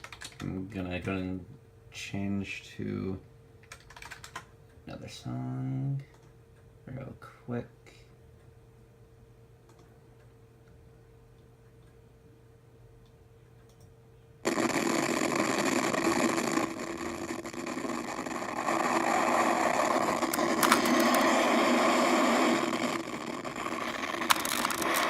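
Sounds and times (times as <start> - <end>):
sharp clicks: 13.6 - 25.0.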